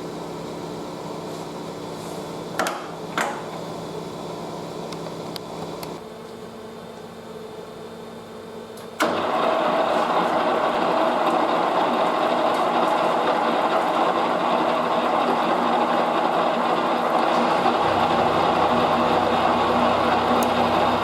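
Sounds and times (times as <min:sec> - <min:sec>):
lathe cutting metal: 0:09.2 - 0:21.0
lathe humming: 0:09.2 - 0:21.0.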